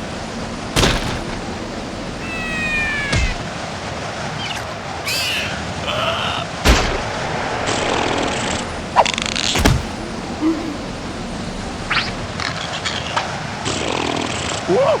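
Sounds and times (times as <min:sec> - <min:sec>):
hard thump: 0:00.8 - 0:01.6, 0:09.6 - 0:10.0
sharp hits: 0:00.8 - 0:03.4
squeaky sliding sounds: 0:00.8 - 0:03.4.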